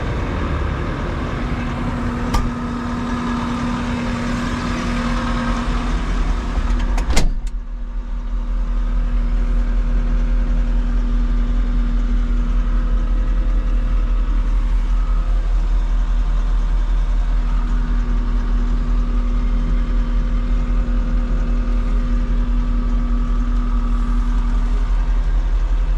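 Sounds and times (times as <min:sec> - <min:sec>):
diesel engine running: 0:00.0 - 0:25.9
sharp clicks or knocks: 0:02.3 - 0:02.6.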